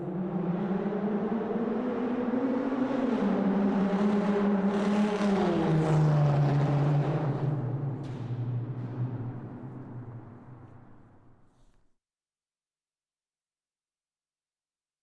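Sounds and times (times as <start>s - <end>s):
car engine running in a tunnel: 0.0s - 11.5s.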